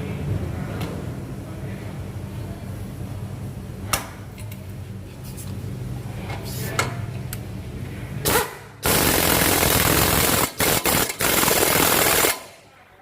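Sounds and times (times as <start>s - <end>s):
steady low hum: 0.0s - 13.0s
impact wrench running: 8.3s - 12.6s.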